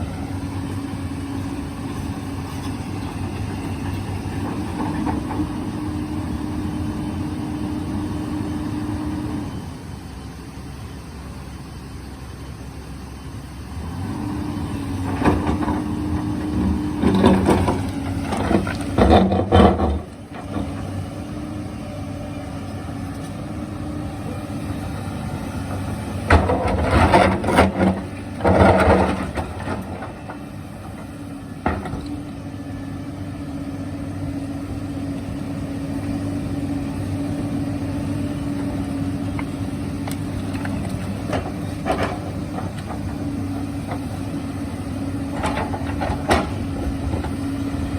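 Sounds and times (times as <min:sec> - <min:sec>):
excavator diesel engine running: 0:00.0 - 0:47.9
excavator working rock: 0:00.0 - 0:47.9.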